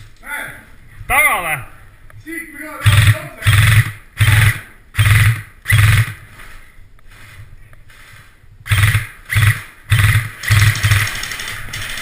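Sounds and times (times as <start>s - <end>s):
airsoft gun firing bursts: 2.8s - 6.3s, 8.7s - 12.0s.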